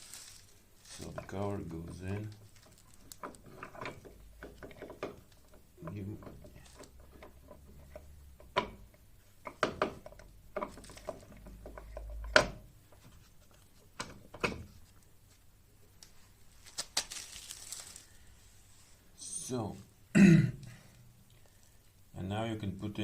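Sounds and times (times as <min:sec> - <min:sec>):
knocks and clicks of cover fitting: 0:06.2 - 0:12.7.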